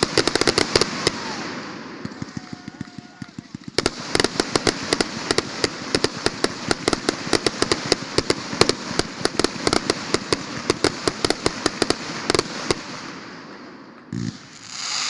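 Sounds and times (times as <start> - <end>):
firecrackers banging: 0.0 - 15.0.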